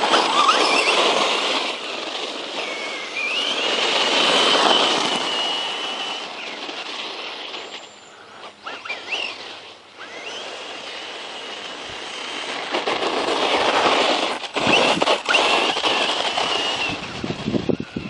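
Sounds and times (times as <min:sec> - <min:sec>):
electric motor whining: 0:00.0 - 0:18.0.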